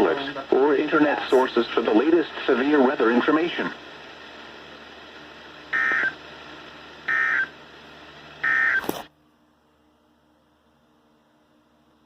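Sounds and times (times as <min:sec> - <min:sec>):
broadcast hiss: 0:00.0 - 0:09.2.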